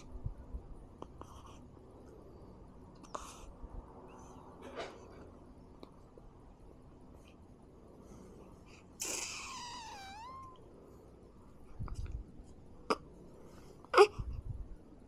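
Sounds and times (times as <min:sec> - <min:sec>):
baby whimpering: 0:09.0 - 0:10.6.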